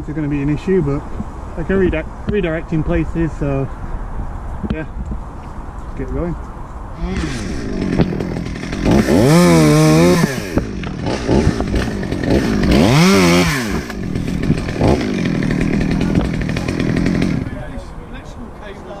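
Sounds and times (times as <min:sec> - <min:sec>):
chainsaw revving: 0:07.0 - 0:17.8.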